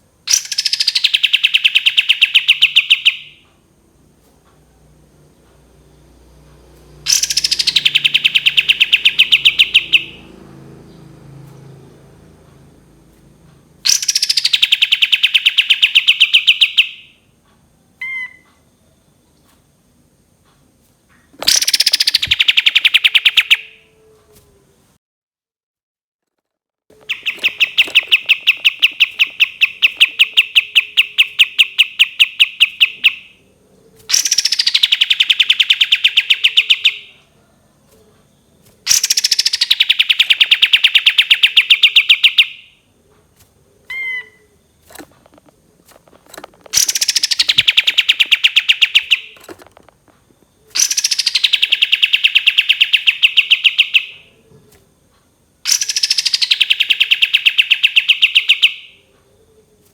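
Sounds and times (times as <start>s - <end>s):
songbird trilling: 0.3s - 3.4s, 7.1s - 10.3s, 13.8s - 17.2s, 18.0s - 18.4s, 21.4s - 23.8s, 26.9s - 37.2s, 38.9s - 42.8s, 43.8s - 54.5s, 55.7s - 59.0s.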